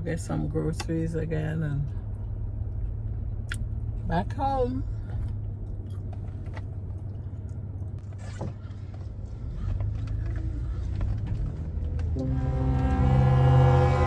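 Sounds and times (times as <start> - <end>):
truck engine rumble: 0.0 - 14.0.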